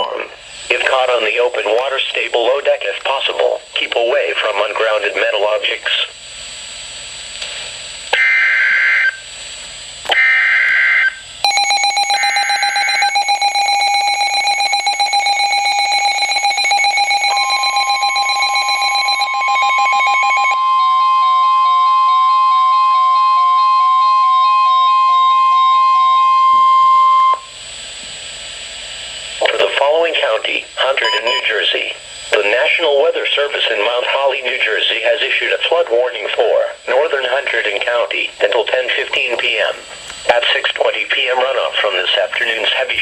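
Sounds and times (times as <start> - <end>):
steady warning tone: 0.0 - 5.9, 10.1 - 27.6, 30.9 - 31.8, 36.8 - 43.0
screeching data bursts: 10.2 - 20.6
pulsing electronic tones: 11.5 - 20.6.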